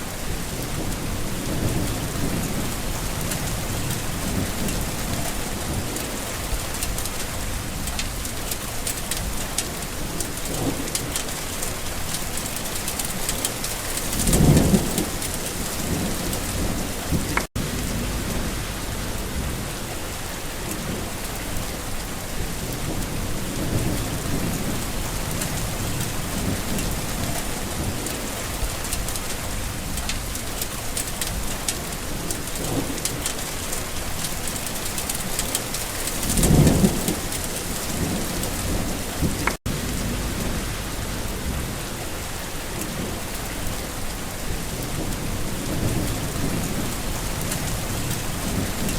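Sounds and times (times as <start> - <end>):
steady rain falling: 0.0 - 48.9
low rolls of thunder: 0.1 - 8.3, 13.3 - 21.7, 22.3 - 30.4, 36.2 - 48.9.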